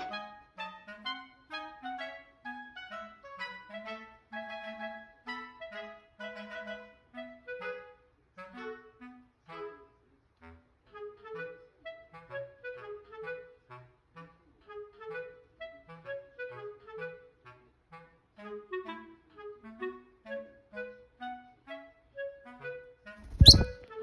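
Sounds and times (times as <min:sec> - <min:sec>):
woodwind melody of short notes: 0:23.3 - 0:23.8.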